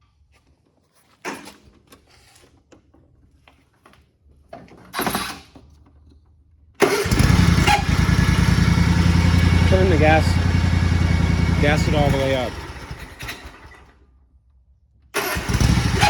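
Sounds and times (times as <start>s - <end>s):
lawnmower engine running: 6.8s - 13.8s, 15.2s - 16.0s.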